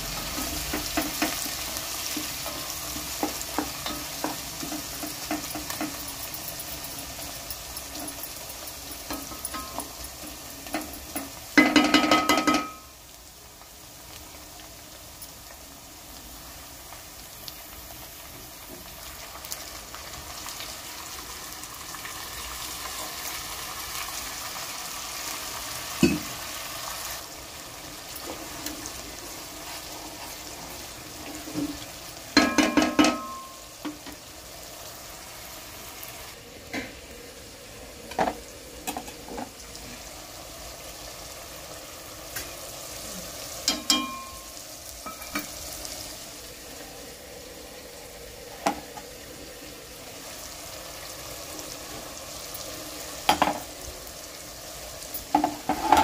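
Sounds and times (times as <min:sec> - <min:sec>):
food sizzling in hot oil: 0:00.0 - 0:56.0
metal utensil clinking on pan: 0:02.1 - 0:12.9, 0:32.4 - 0:34.1, 0:43.7 - 0:45.5, 0:55.2 - 0:56.0.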